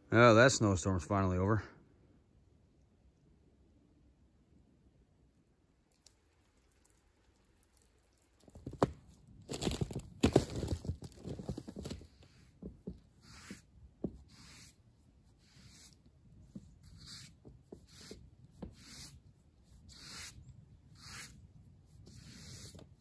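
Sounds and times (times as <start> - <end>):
crunching and scraping: 5.9 - 14.7.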